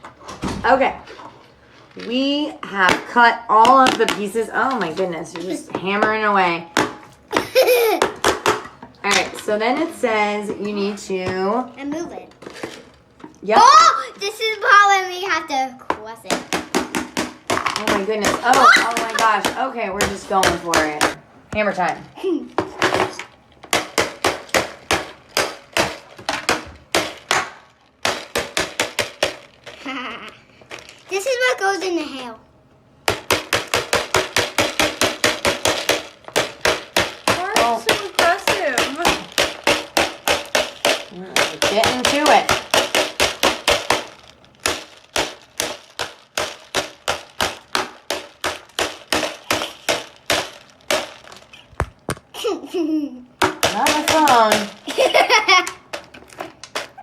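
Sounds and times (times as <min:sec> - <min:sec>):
toy hammer knocking plastic casing: 0:02.8 - 0:09.9, 0:15.9 - 0:21.2, 0:22.6 - 0:29.8, 0:33.0 - 0:52.3, 0:53.4 - 0:57.0.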